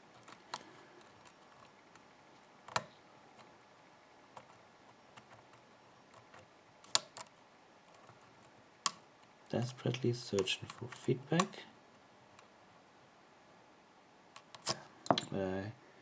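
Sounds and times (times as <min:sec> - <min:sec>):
lock pick metallic clicks: 0:02.7 - 0:02.9, 0:06.1 - 0:07.3, 0:14.4 - 0:15.4.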